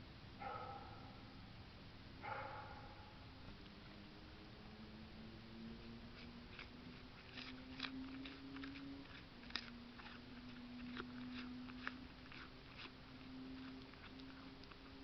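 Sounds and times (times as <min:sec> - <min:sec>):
deer chewing and crunching: 0:03.5 - 0:15.0.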